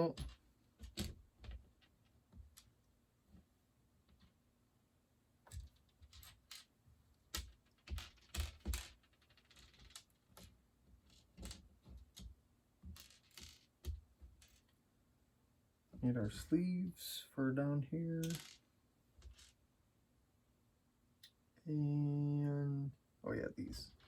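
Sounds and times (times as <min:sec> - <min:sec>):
plastic bricks clicking and clattering: 0:18.2 - 0:18.6.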